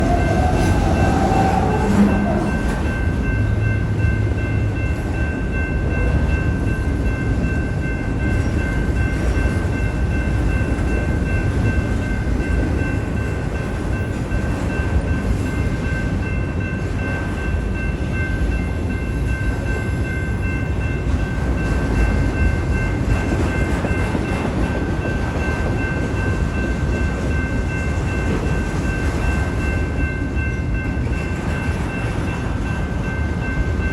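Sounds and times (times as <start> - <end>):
high ringing tone: 0.0 - 13.3
train wheels rumbling on rails: 0.0 - 33.9.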